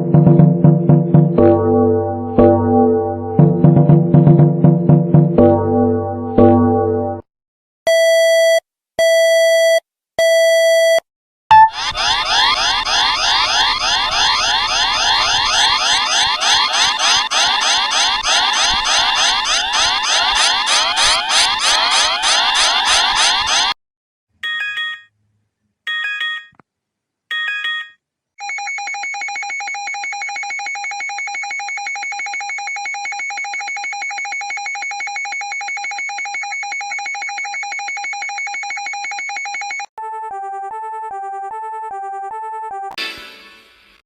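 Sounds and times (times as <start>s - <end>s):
two-pitch alternating tone: 11.5s - 11.8s
pulsing alarm tone: 11.5s - 23.8s.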